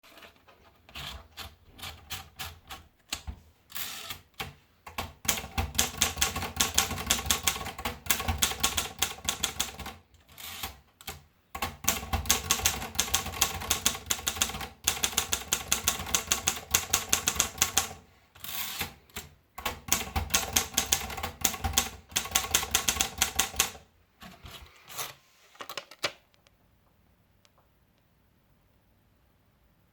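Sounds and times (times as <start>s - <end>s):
typewriter keystrokes: 1.8s - 18.0s, 18.7s - 23.8s.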